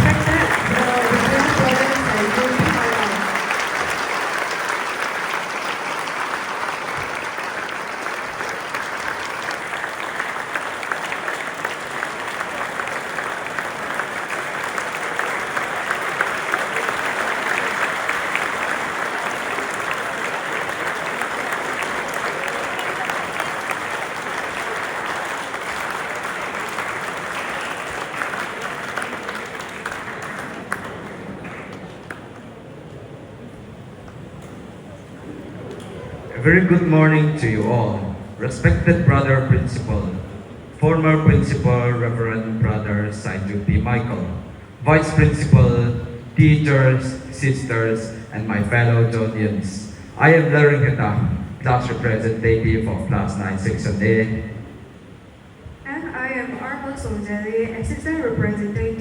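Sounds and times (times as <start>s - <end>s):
large audience clapping: 0.0s - 32.7s.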